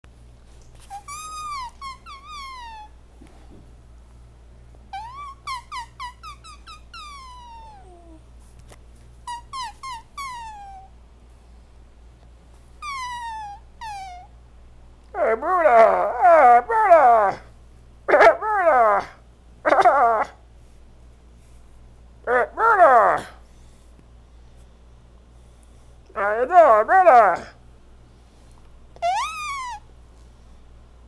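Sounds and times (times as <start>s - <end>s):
high-pitched squeaky chirps: 0.8s - 2.9s, 4.9s - 7.8s, 9.3s - 10.9s, 12.8s - 14.3s, 29.0s - 29.9s
animal wavering call: 0.9s - 3.0s, 4.9s - 8.2s, 12.8s - 14.3s, 29.0s - 29.9s.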